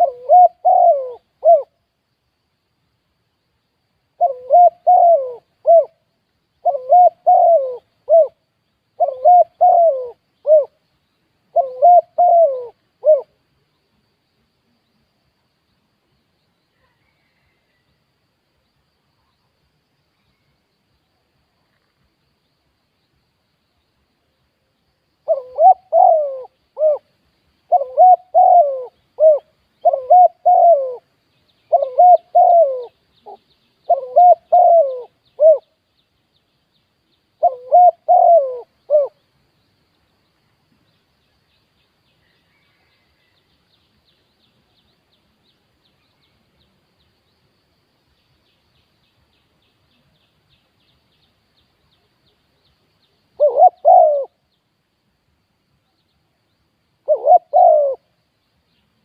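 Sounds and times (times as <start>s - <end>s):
dove cooing: 0.0s - 1.8s, 4.2s - 6.0s, 6.6s - 8.4s, 9.0s - 10.8s, 11.5s - 13.4s, 25.2s - 27.1s, 27.7s - 31.1s, 31.7s - 35.7s, 37.4s - 39.2s, 53.4s - 54.4s, 57.0s - 58.1s.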